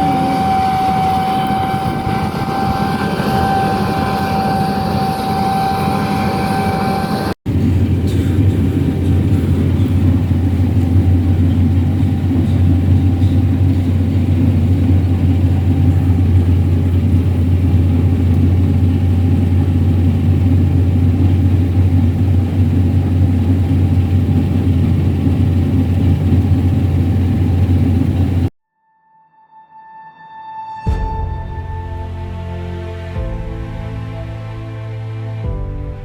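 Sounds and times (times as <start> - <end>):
combine harvester droning: 0.0 - 28.5
faint steady whine: 0.0 - 28.5.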